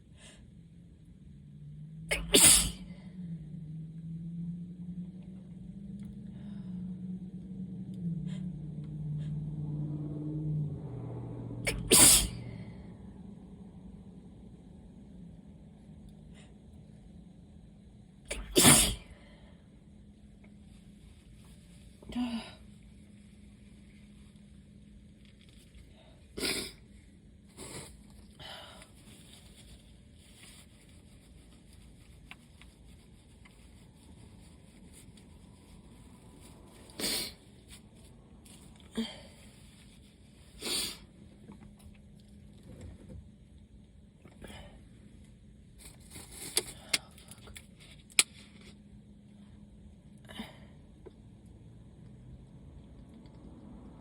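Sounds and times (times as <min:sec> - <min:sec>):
low steady voice hum: 0:00.0 - 0:24.8
person sneezing: 0:02.1 - 0:03.0, 0:11.7 - 0:12.6, 0:18.3 - 0:19.2, 0:26.4 - 0:26.8
person sniffing and exhaling: 0:02.1 - 0:03.0, 0:11.7 - 0:12.8, 0:18.3 - 0:19.4, 0:27.5 - 0:29.5, 0:36.8 - 0:37.5, 0:40.5 - 0:41.1.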